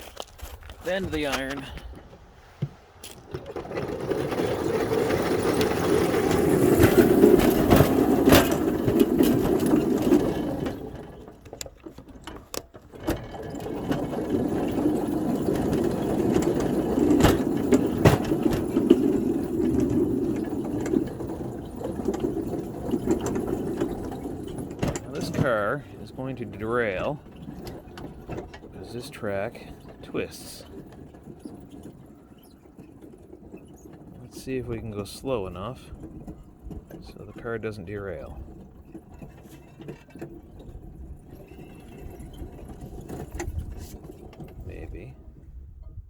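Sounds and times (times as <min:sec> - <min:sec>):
small locomotive engine running: 0:03.0 - 0:45.6.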